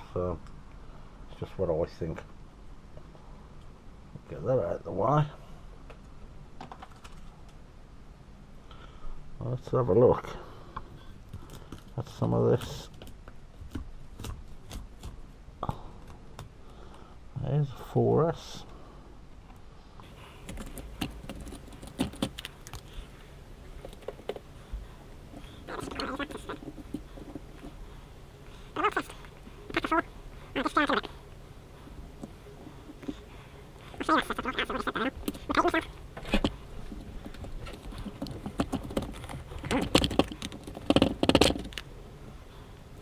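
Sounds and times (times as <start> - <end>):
battery parts clicking and clinking: 20.0 - 43.0.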